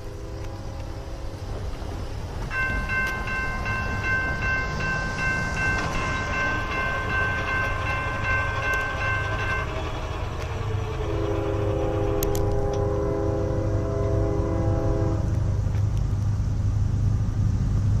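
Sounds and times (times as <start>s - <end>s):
locomotive horn chord: 0.0s - 1.6s, 2.6s - 15.4s
freight train rumble: 0.0s - 18.0s
crossing bell ringing: 2.4s - 12.3s.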